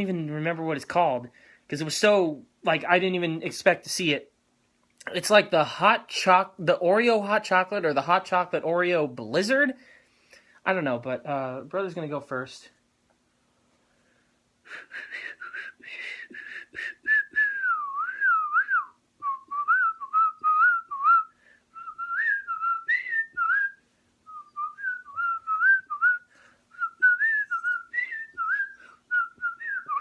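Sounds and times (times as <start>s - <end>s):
person whistling a melody: 14.9s - 30.0s.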